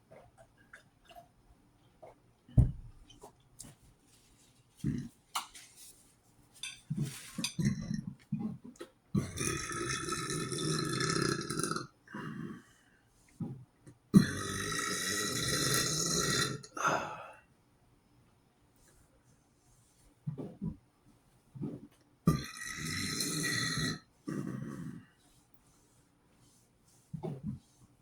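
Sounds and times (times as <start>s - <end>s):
long drawn-out burps: 7.4s - 8.5s, 9.2s - 12.6s, 14.2s - 17.2s, 22.3s - 25.0s.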